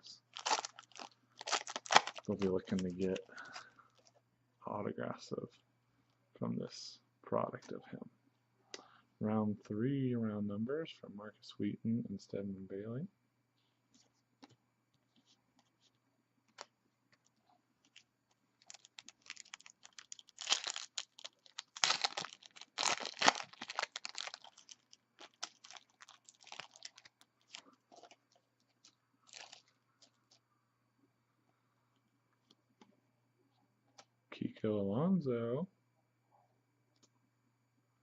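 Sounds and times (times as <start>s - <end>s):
foil wrapper crinkling and tearing: 0.3s - 3.7s, 18.6s - 30.4s.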